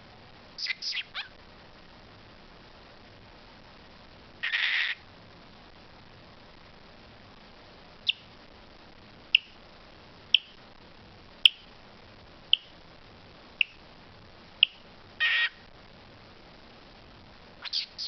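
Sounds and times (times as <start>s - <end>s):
sharp high-pitched clicks: 10.4s - 10.6s, 12.6s - 12.8s.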